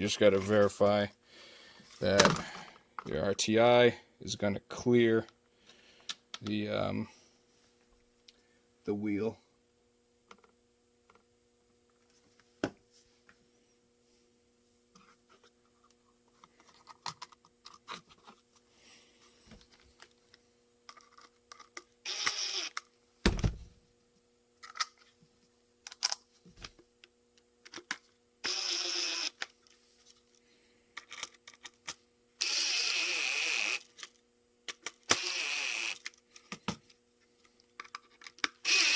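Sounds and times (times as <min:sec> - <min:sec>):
small power tool whirring: 0:22.0 - 0:22.9, 0:28.4 - 0:29.4, 0:32.4 - 0:34.2, 0:35.0 - 0:36.2, 0:38.6 - 0:38.9.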